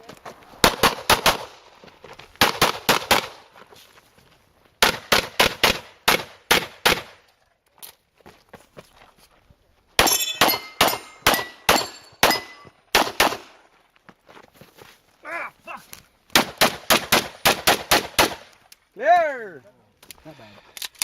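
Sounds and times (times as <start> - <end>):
rapid pistol fire: 0.6 - 1.6, 10.8 - 13.5, 16.4 - 18.5.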